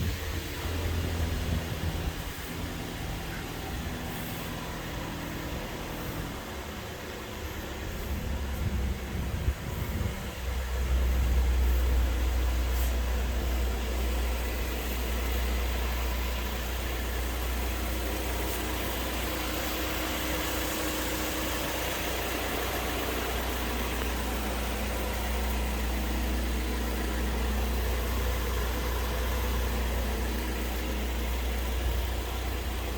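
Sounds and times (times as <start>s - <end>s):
car engine idling: 0.0s - 32.9s.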